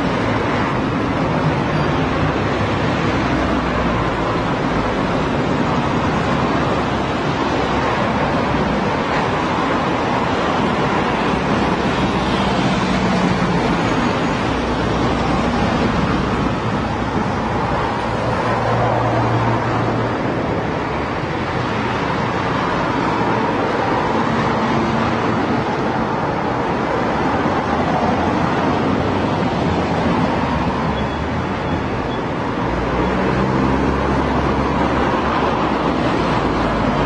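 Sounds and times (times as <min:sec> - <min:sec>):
road traffic: 0:00.0 - 0:37.0.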